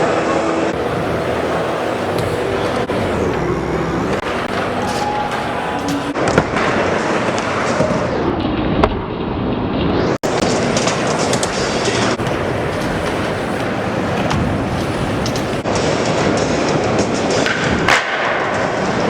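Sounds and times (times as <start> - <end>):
bike tyres whirring on ramps: 0.7 - 8.2, 10.2 - 15.8
bike landing impacts: 4.0 - 6.2, 10.2 - 15.6.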